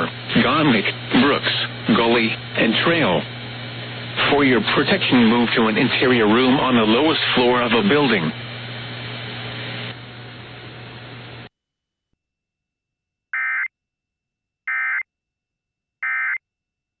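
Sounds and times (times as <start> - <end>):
radio broadcast hiss and hum: 0.0 - 11.5
electronic data warbles: 13.4 - 13.7, 14.7 - 15.0, 16.0 - 16.4.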